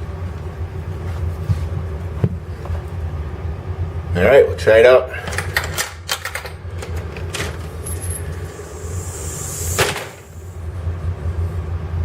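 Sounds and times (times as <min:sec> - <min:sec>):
steady low hum: 0:00.0 - 0:12.0
door closer hissing: 0:08.0 - 0:10.6.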